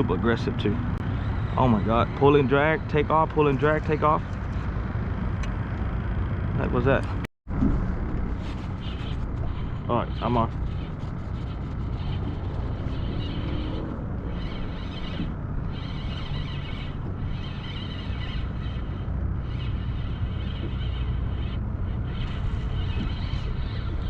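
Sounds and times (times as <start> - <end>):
wind noise on microphone: 7.5 - 24.0
fishing reel cranking: 8.6 - 24.0.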